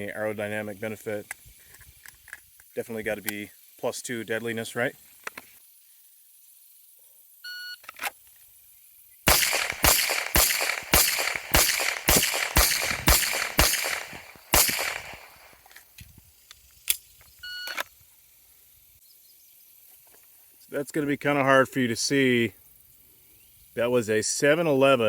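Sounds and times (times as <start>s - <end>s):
pistol shots: 9.3s - 15.6s.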